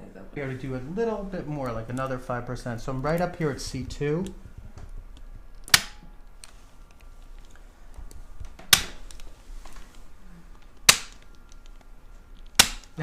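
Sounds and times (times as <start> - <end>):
neck joint cracking: 10.6 - 13.0.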